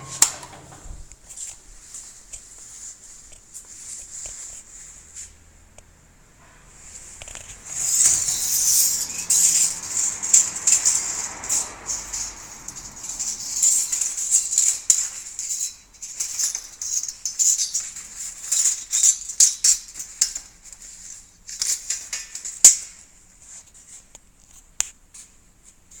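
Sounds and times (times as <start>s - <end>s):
sheet metal scraping strokes: 0.0s - 1.1s, 6.5s - 20.2s.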